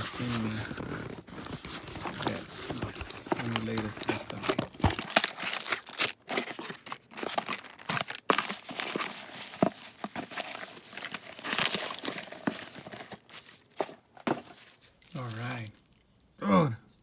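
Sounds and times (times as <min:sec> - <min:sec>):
packing material crinkling: 0:00.0 - 0:16.2
small ripping sounds: 0:03.5 - 0:08.6.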